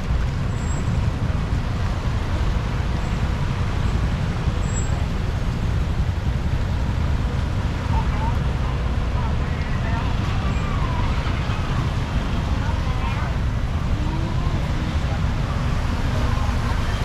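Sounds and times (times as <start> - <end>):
road traffic rumble: 0.0 - 17.0.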